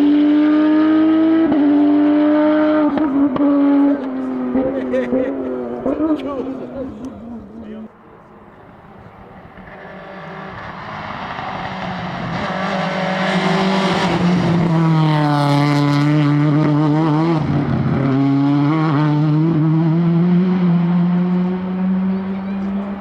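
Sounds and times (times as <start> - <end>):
rally car engine: 0.0 - 23.0.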